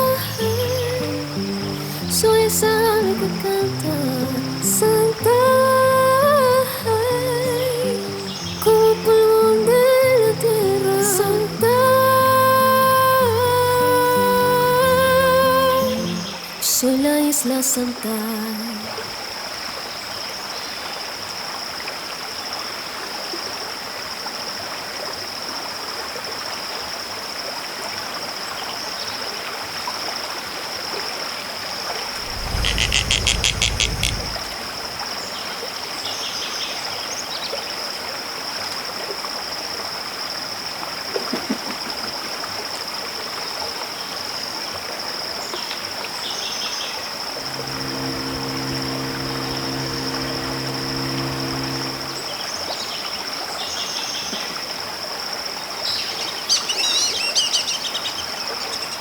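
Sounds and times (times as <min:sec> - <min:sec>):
rapid clicks: 0:32.2 - 0:34.6
faint chirps: 0:32.2 - 0:35.0, 0:47.4 - 0:52.5
low rumble: 0:32.2 - 0:35.0
steady hiss: 0:32.2 - 0:35.0, 0:47.4 - 0:52.4.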